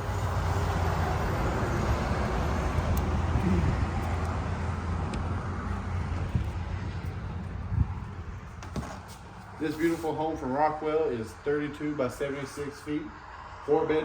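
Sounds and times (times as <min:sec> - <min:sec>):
vehicle rumble and tyre noise: 0:00.0 - 0:14.0.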